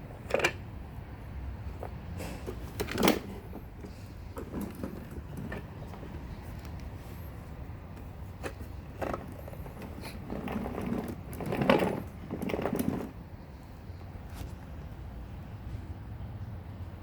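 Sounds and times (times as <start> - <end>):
plastic parts clattering and rubbing: 1.8 - 6.2, 8.4 - 13.2
vacuum cleaner plastic parts clicking: 2.5 - 5.7.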